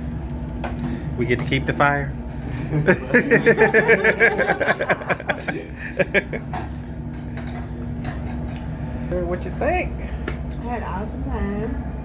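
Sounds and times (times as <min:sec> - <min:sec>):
steady low hum: 0:00.0 - 0:12.0
person laughing: 0:02.7 - 0:06.5.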